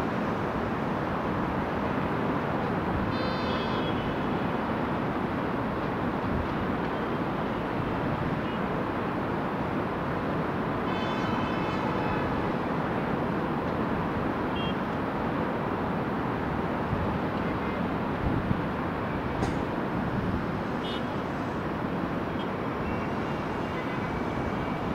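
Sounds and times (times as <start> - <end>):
street traffic: 0.0 - 24.9
heavy vehicle engines rumbling: 15.8 - 24.9.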